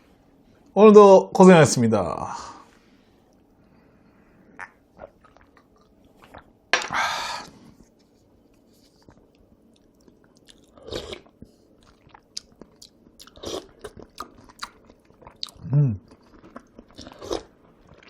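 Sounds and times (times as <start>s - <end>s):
mouth clicks and chewing: 8.6s - 18.0s.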